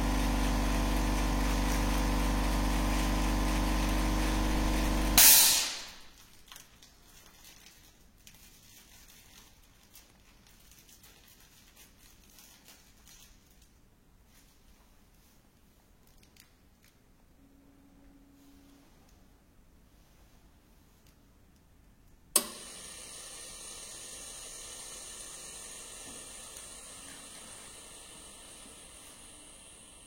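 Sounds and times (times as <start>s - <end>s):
machine motor running: 0.0s - 5.3s, 22.4s - 30.0s
loud hiss: 5.2s - 6.1s, 22.4s - 30.0s.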